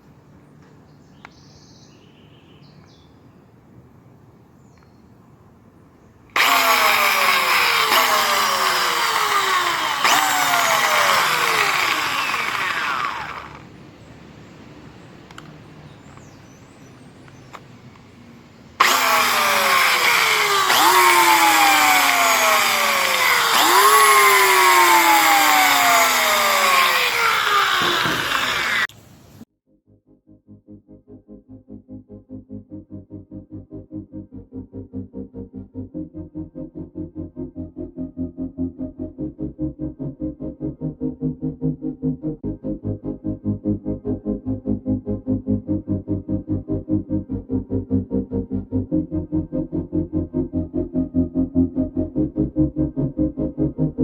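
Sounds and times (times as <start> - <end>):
electric drill motor whining: 6.4 - 13.8, 18.8 - 28.9.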